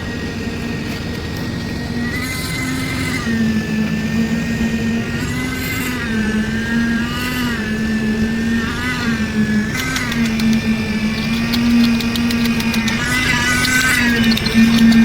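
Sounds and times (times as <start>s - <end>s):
engine running: 0.0s - 15.0s
fast clattering rattle: 9.8s - 15.0s.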